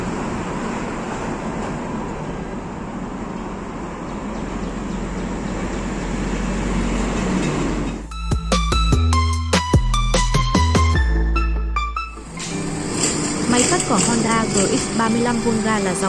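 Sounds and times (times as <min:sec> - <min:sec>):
electronic music with heavy bass: 0:08.0 - 0:12.0
brush cutter engine drone: 0:12.3 - 0:16.0.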